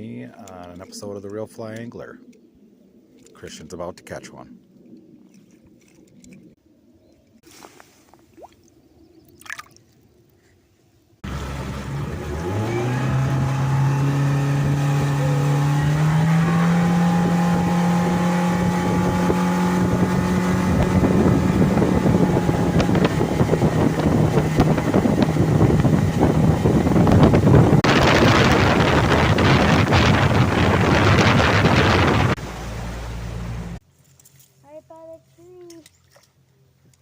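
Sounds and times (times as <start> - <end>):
motorboat engine: 11.2 - 33.8
wind buffeting microphone: 12.4 - 32.4.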